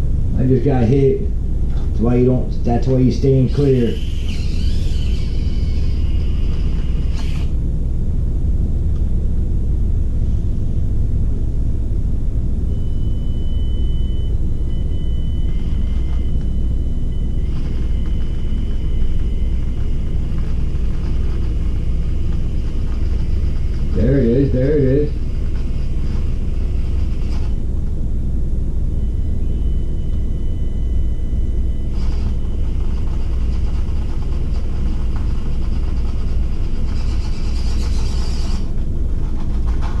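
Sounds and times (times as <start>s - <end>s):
low rumble: 0.0s - 38.1s
small electric motor whine: 3.2s - 7.6s, 13.2s - 27.7s, 28.9s - 38.8s.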